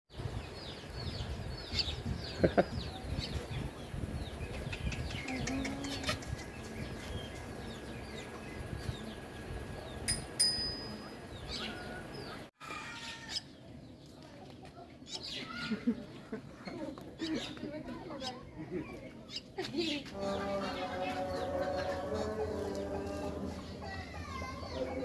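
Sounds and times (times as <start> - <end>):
short ringing clink: 10.1 - 11.2.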